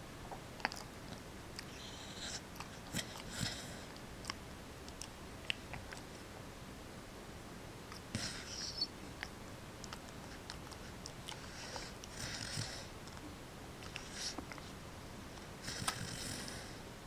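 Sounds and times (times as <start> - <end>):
dog snoring: 1.7 - 3.9, 8.1 - 8.9, 10.3 - 12.9, 13.8 - 14.4, 15.6 - 16.8.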